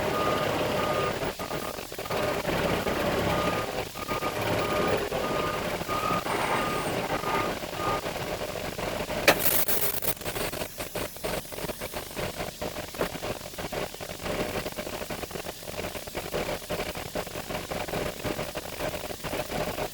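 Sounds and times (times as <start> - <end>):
diesel engine idling unevenly: 0.0 - 9.3
short sharp hiss: 9.3 - 10.1.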